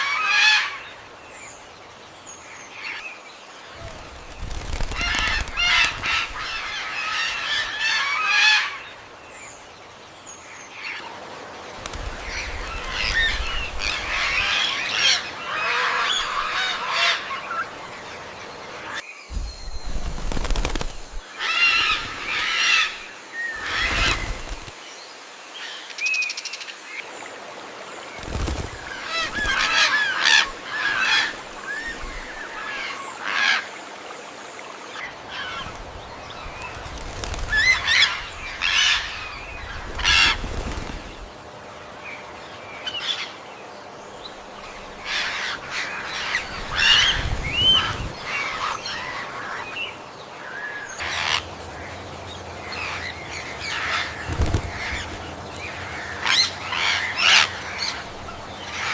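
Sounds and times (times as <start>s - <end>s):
peafowl calling: 4.9s - 8.8s, 12.7s - 17.7s, 50.5s - 51.5s, 52.8s - 58.9s.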